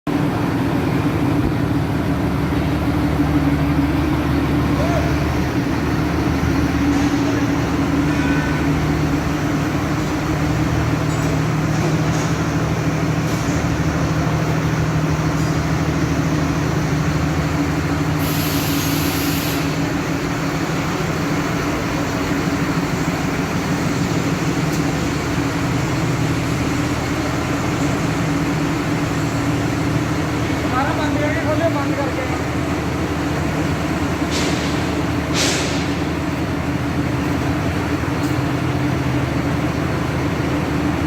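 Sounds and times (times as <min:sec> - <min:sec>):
combine harvester engine running: 0:00.1 - 0:41.0
brief hiss: 0:18.1 - 0:19.9.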